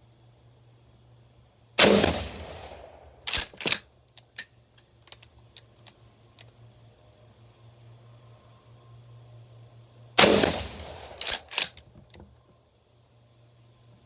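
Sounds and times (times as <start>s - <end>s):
shotgun shot with ringing tail: 1.8s - 3.2s, 10.2s - 11.4s.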